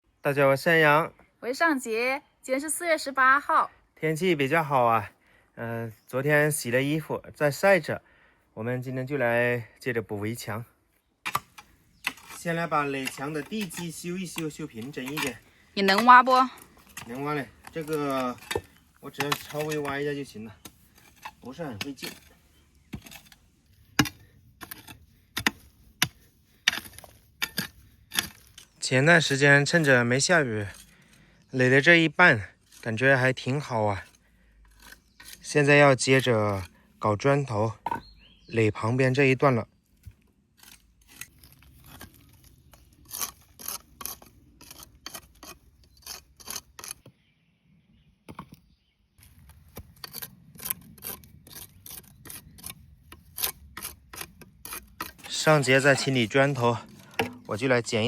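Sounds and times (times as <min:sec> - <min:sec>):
metal tool scraping ground: 0:11.2 - 0:31.8, 0:32.4 - 0:36.8, 0:40.1 - 0:47.0, 0:49.2 - 0:58.0
metal tool knocking ground: 0:11.3 - 0:22.3, 0:37.8 - 0:38.2, 0:57.0 - 0:58.0.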